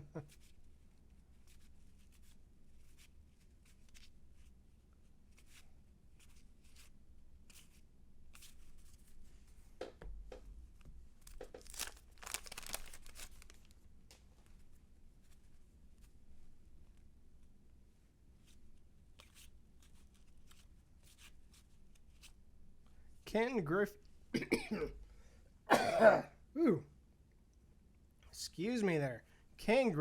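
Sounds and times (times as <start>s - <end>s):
wax paper wrapper tearing: 11.2s - 13.8s
cards handled with soft clicks: 19.1s - 23.0s.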